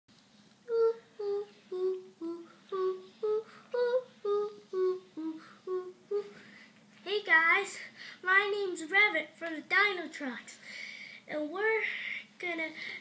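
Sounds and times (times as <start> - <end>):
child humming a tune: 0.6 - 6.4.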